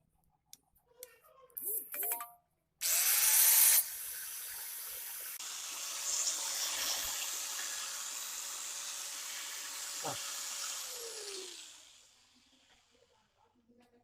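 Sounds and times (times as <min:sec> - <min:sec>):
angle grinder whining: 0:02.8 - 0:12.9.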